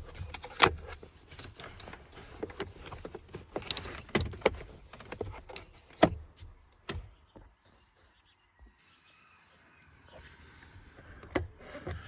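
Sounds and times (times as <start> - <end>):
rustling and scraping: 0.0 - 8.2.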